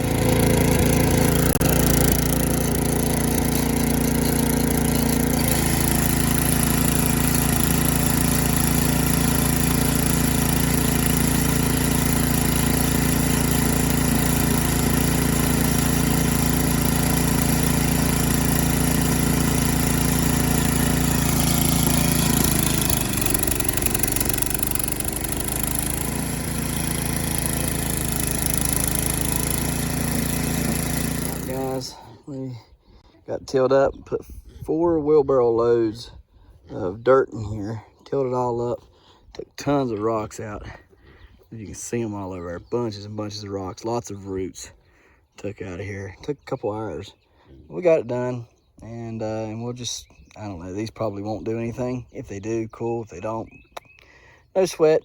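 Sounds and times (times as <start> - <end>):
garden tiller engine running: 0.0 - 33.1.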